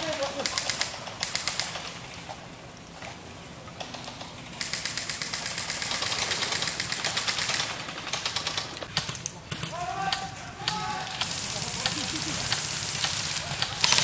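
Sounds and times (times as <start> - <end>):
airsoft gun firing full auto: 0.0 - 2.0, 4.0 - 14.0.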